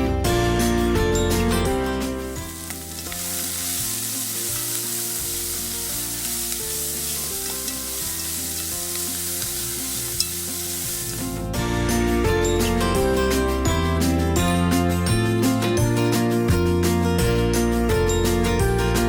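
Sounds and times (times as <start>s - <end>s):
soft background music: 0.0s - 19.0s
food sizzling in a frying pan: 2.0s - 11.6s.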